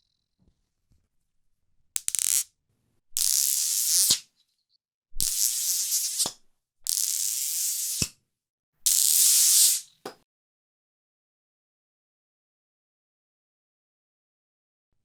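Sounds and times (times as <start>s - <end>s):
magnets buzzing rattle: 2.0s - 2.4s, 3.2s - 4.2s, 5.2s - 6.3s, 6.9s - 8.1s, 8.9s - 10.0s
magnets snapping together: 2.0s - 2.4s, 3.2s - 4.2s, 5.2s - 8.1s.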